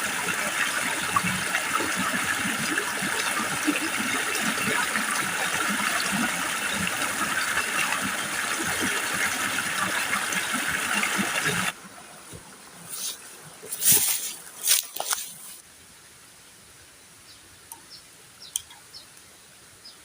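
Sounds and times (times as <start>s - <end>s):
running water rushing: 0.0s - 15.6s.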